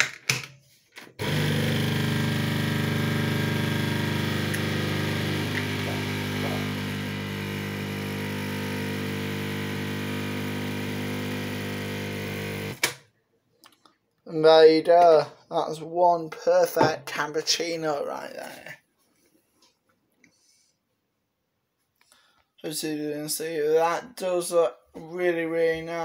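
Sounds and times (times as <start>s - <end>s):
coffee machine pump humming: 1.2s - 12.8s.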